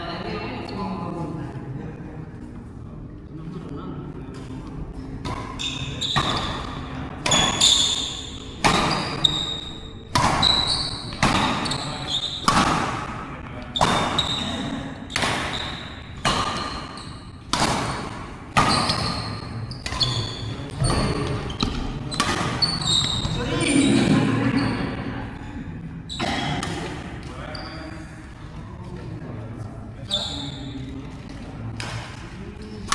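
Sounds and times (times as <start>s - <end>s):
rackets striking shuttlecock: 5.2s - 9.5s, 10.1s - 13.2s, 15.1s - 23.4s
shoes squeaking on court: 5.3s - 12.6s, 13.8s - 18.0s, 18.6s - 23.4s, 30.1s - 30.9s.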